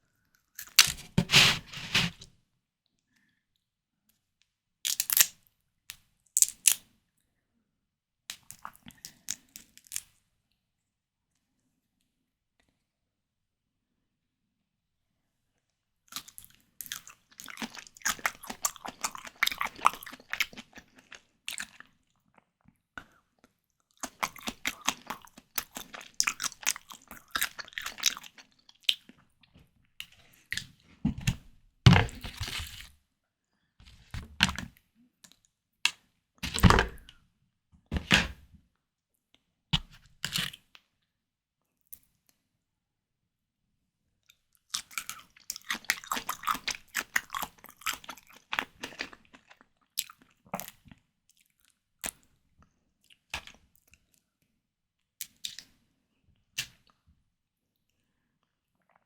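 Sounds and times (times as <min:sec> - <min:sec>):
close chewing with wet mouth sounds: 0:16.1 - 0:22.4, 0:23.9 - 0:29.3, 0:44.7 - 0:52.2.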